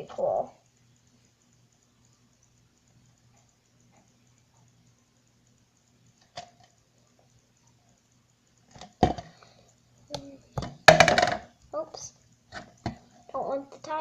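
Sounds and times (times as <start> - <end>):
objects knocking on a table: 8.8 - 9.3, 10.6 - 11.5.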